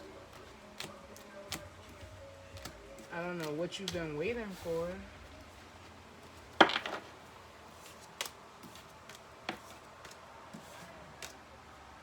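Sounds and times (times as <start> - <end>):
cards clicking on a table: 6.6 - 7.1, 7.8 - 11.4.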